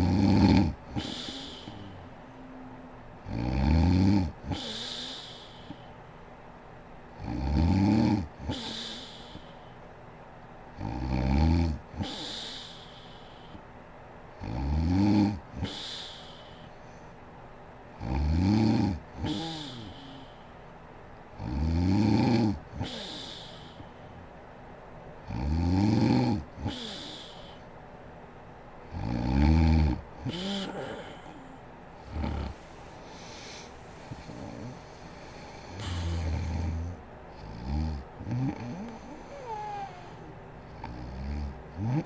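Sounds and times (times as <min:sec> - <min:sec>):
woman snoring: 0:00.0 - 0:02.2, 0:03.3 - 0:05.9, 0:07.2 - 0:09.7, 0:10.8 - 0:13.6, 0:14.4 - 0:16.7, 0:18.0 - 0:20.4, 0:21.4 - 0:24.0, 0:25.3 - 0:27.6, 0:29.0 - 0:42.0.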